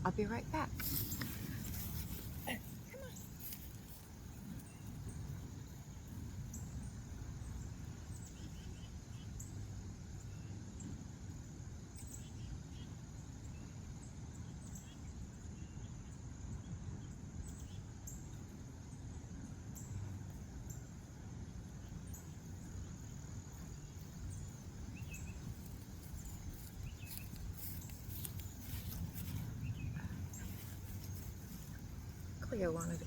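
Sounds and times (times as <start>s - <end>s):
insects trilling: 0.0s - 33.0s
soft clicks and rustles: 0.7s - 5.0s, 25.5s - 32.3s
low steady rumble: 13.0s - 33.0s.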